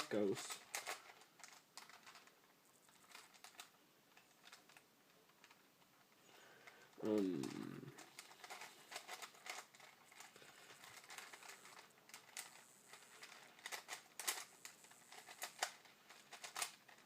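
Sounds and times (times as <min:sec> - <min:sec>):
plastic puzzle cube clicking: 0:07.0 - 0:17.0.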